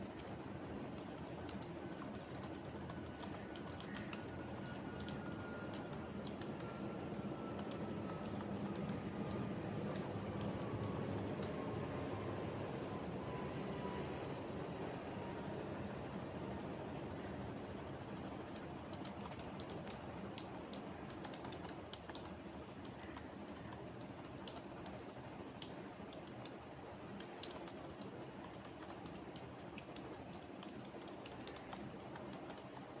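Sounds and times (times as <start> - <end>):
keyboard keystroke clicks: 0.0 - 11.5, 18.5 - 25.0, 27.2 - 32.9
low background hum: 0.0 - 33.0.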